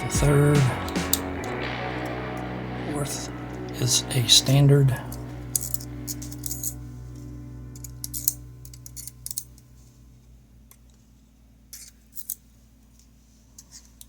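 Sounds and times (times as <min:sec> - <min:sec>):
small metal clicks and clinks: 0:11.7 - 0:12.4.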